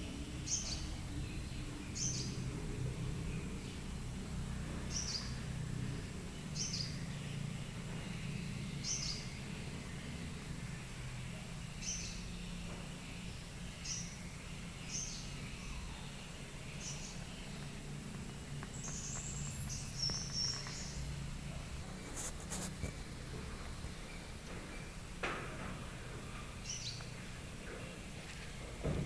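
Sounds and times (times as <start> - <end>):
small bird chirping: 0.0 - 25.1, 26.3 - 28.4
steady low hum: 0.0 - 29.0.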